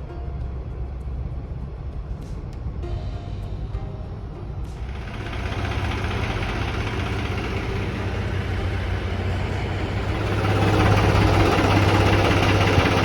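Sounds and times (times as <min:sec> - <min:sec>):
tractor diesel engine humming: 0:03.1 - 0:13.0.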